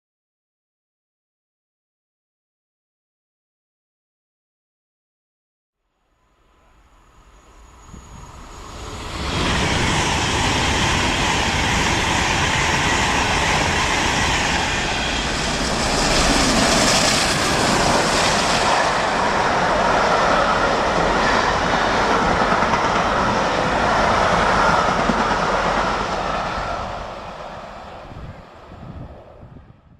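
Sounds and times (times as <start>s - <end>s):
steam locomotive passing: 6.2s - 29.8s.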